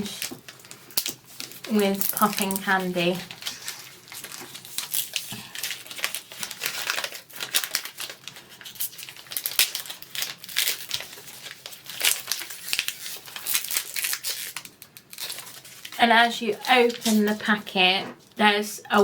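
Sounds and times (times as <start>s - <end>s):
wrapper crinkling and tearing: 0.0s - 17.4s.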